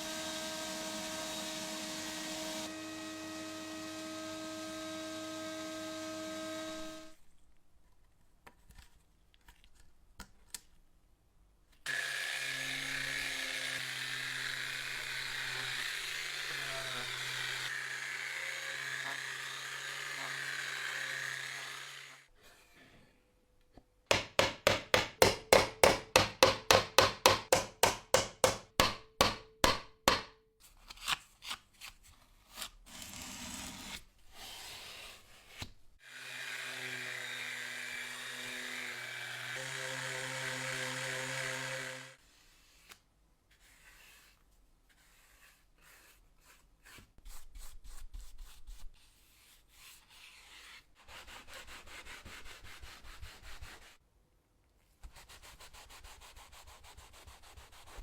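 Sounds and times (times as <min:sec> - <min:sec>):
small electric tool motor: 0:00.0 - 0:07.2, 0:11.9 - 0:22.3, 0:36.0 - 0:42.2
hand sawing on wood: 0:24.1 - 0:30.3.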